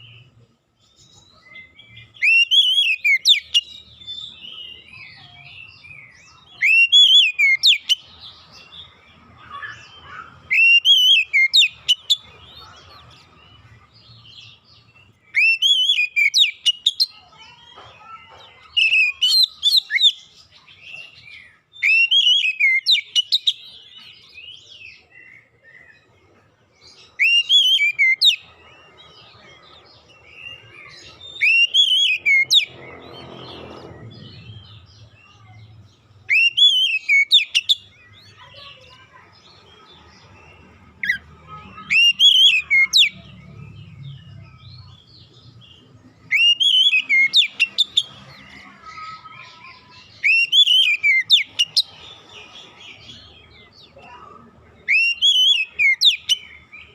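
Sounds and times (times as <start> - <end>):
bird singing whistled phrases: 1.6 - 4.8, 6.5 - 8.0, 10.5 - 12.2, 15.3 - 17.2, 21.8 - 23.6, 27.2 - 28.4, 31.3 - 32.7, 36.3 - 37.9, 41.9 - 43.2, 46.3 - 48.1, 50.2 - 51.9, 54.9 - 56.6.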